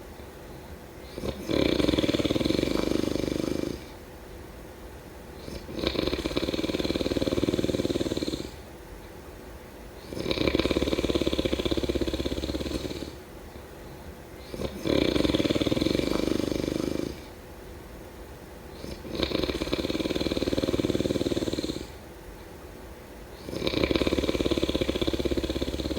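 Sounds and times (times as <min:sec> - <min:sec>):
person snoring: 0:01.0 - 0:04.0, 0:05.4 - 0:08.6, 0:10.0 - 0:13.2, 0:14.4 - 0:17.3, 0:18.8 - 0:22.0, 0:23.4 - 0:25.9
quiet breathing: 0:10.0 - 0:17.4, 0:18.7 - 0:22.2, 0:23.3 - 0:25.9.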